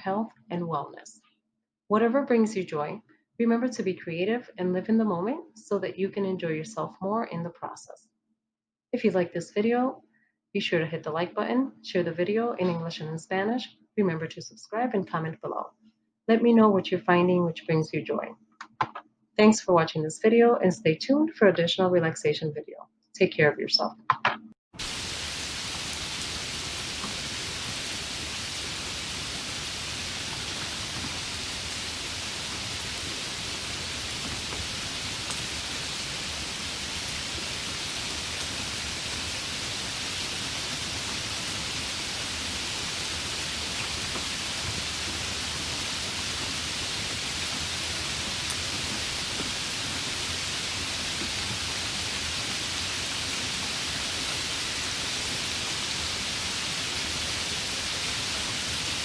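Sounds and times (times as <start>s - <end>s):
rain falling: 24.8s - 59.0s
running water: 24.8s - 59.0s.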